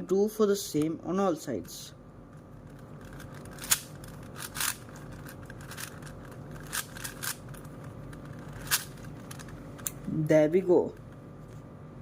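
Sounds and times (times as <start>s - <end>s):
puzzle cube clicking and scraping: 2.6s - 9.9s.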